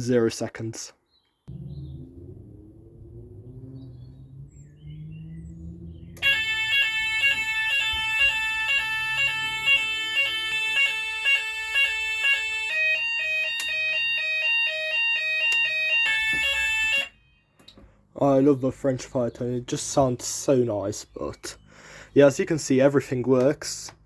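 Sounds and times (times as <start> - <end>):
fire alarm sounders: 6.1 - 17.8.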